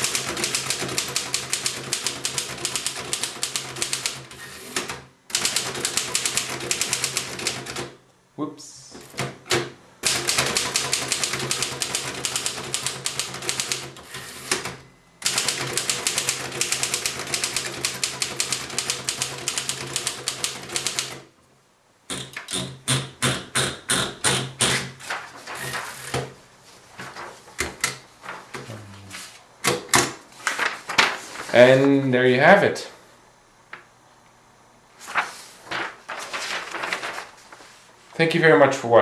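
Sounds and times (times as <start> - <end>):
manual typewriter typing: 0.0 - 7.9, 9.2 - 21.2.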